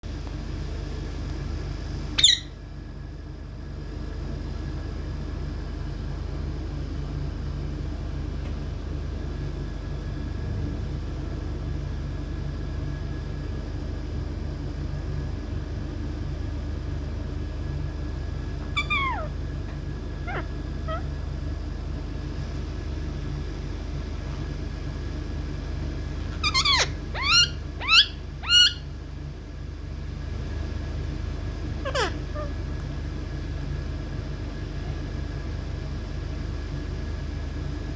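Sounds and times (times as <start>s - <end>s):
steady low hum: 0.0s - 37.9s
parrot screeching: 2.2s - 2.5s, 18.7s - 19.4s, 20.2s - 21.1s, 26.3s - 28.9s, 31.8s - 32.6s.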